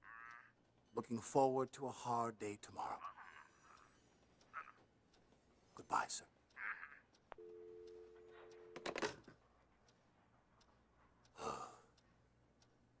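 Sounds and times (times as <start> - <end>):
telephone dial tone: 7.4 - 9.2
breathy sigh: 11.4 - 11.9.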